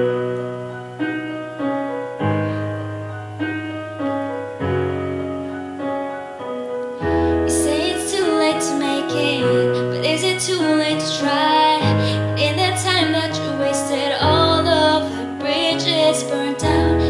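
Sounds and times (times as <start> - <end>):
piano chords ringing: 0.0 - 17.0
person singing: 7.2 - 17.0.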